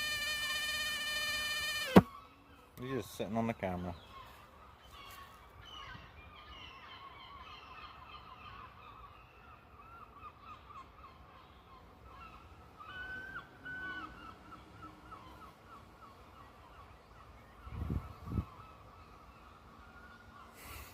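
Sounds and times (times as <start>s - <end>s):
hoverfly high squeaky piping: 0.0s - 2.2s.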